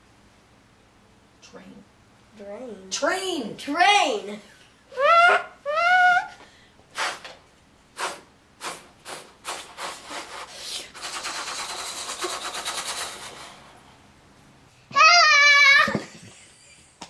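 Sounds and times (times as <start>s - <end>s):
boy imitating steam train chugging: 6.9s - 7.3s, 8.0s - 13.7s.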